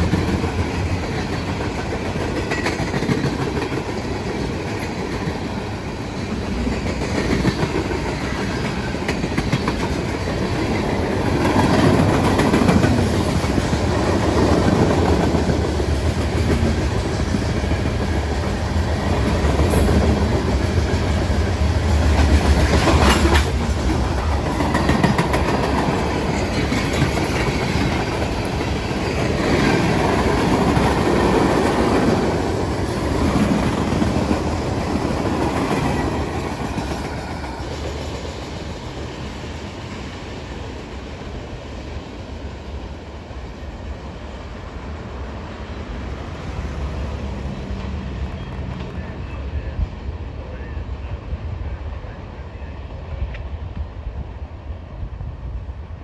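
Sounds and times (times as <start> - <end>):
wheels clacking over rail joints: 0.0 - 40.7
train cars rumbling on rails: 0.0 - 56.0.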